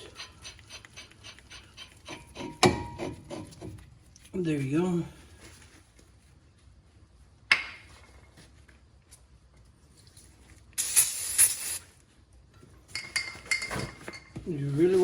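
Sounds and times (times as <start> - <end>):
aerosol spray: 10.8 - 11.9.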